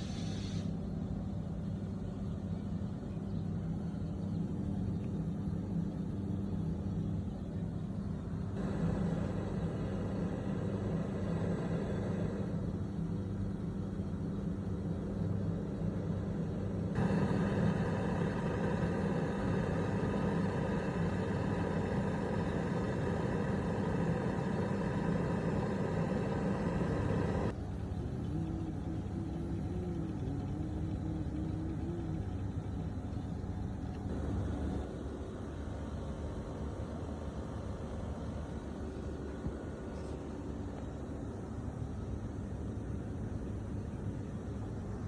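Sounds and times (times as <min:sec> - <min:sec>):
air conditioner humming: 0:00.0 - 0:45.0
loud noise: 0:17.0 - 0:27.5.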